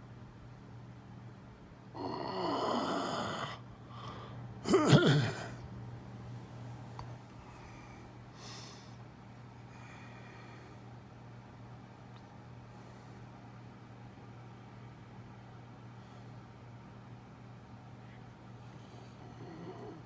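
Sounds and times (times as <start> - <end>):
man snoring: 2.0 - 3.6, 4.7 - 5.5, 19.2 - 20.0
man snorting: 2.0 - 3.6, 4.7 - 5.6.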